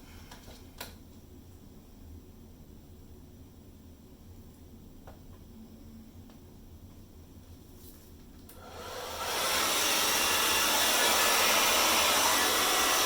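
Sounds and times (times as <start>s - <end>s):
hair dryer blowing: 8.6s - 13.0s.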